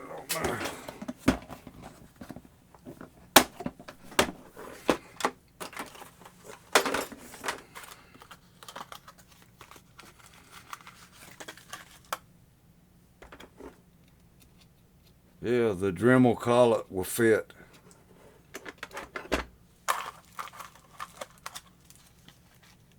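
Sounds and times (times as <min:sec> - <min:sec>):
small parts rustling: 0:00.4 - 0:12.2, 0:17.7 - 0:22.9.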